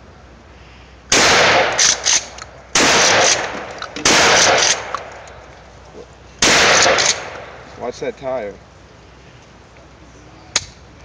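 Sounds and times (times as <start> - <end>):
shotgun blasts with echo: 1.1 - 5.3, 6.4 - 7.6.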